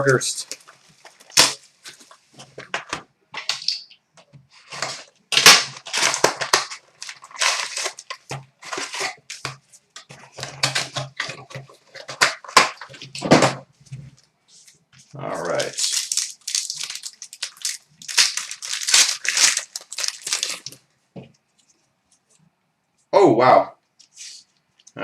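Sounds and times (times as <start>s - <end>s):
cardboard and plastic ripping: 0.4s - 3.7s, 4.6s - 13.6s, 15.3s - 20.8s.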